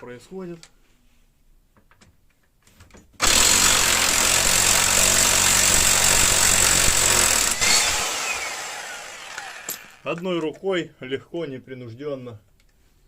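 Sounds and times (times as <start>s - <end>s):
impact wrench hammering: 3.2s - 10.1s.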